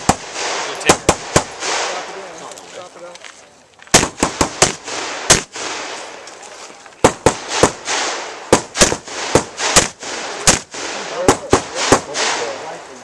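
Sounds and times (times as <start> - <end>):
rifle shots with echo: 0.0 - 2.4, 3.9 - 6.2, 7.0 - 12.8.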